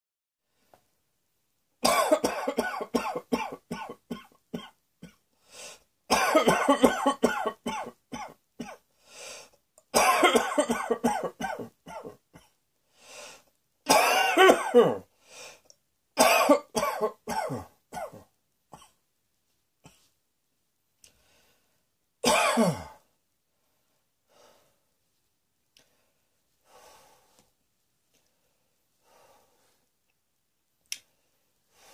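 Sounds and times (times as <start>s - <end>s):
person coughing: 1.8s - 5.2s, 6.1s - 8.8s, 10.0s - 12.6s, 13.9s - 15.1s, 16.2s - 19.0s, 22.2s - 23.0s.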